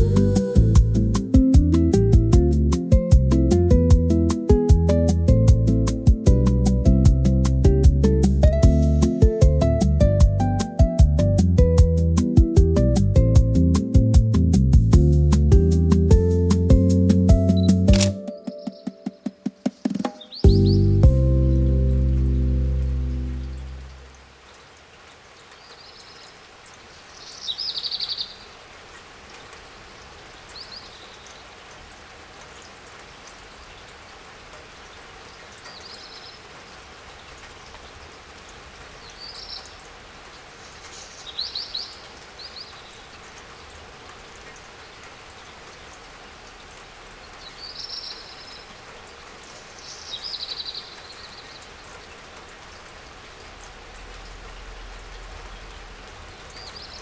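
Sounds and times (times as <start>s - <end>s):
steady rain: 0.0s - 18.1s, 19.2s - 57.0s
bird chirping: 17.4s - 24.1s, 27.0s - 28.6s, 39.0s - 39.8s, 40.6s - 43.2s, 47.3s - 48.8s, 49.4s - 52.9s, 53.5s - 57.0s.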